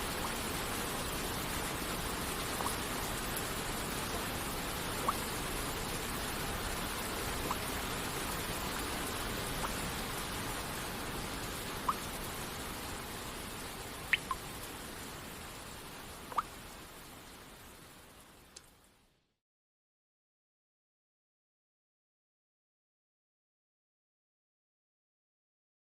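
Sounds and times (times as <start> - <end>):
rain hissing: 0.0 - 18.9
water droplets plinking: 2.6 - 2.8, 7.4 - 7.6, 14.1 - 14.4, 16.3 - 16.5.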